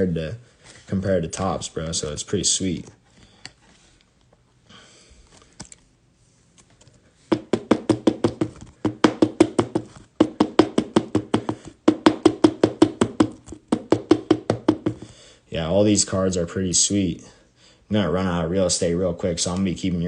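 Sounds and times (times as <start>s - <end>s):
rapid hollow knocking: 7.3s - 15.1s.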